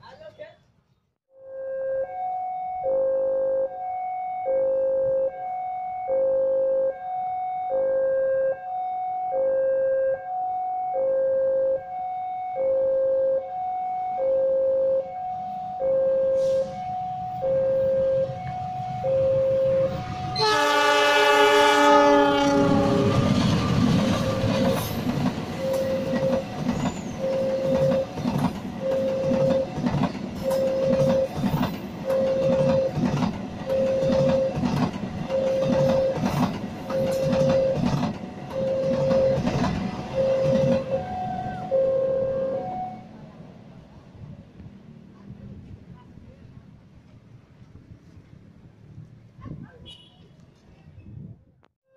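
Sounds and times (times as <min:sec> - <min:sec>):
level-crossing alarm beeping: 0:01.4 - 0:21.0, 0:23.3 - 0:43.1
train horn: 0:12.8 - 0:29.8, 0:30.4 - 0:31.4, 0:32.0 - 0:33.1, 0:33.7 - 0:34.6, 0:38.5 - 0:43.2
train wheels clacking: 0:23.1 - 0:41.0.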